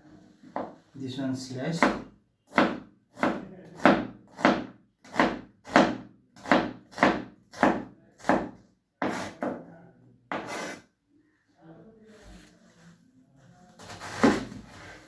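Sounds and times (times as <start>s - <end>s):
knife chopping on wooden board: 1.8s - 9.6s, 10.3s - 10.8s.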